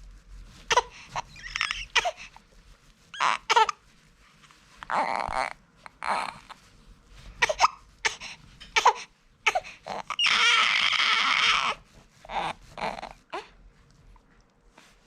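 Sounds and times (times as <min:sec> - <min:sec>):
whining cry: 0:01.2 - 0:02.2, 0:09.9 - 0:13.5.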